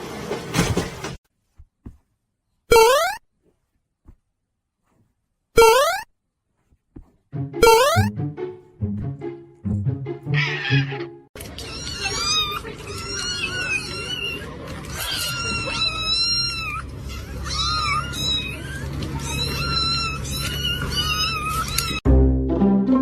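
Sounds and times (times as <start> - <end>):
cat meowing: 10.4 - 11.0, 11.6 - 22.0.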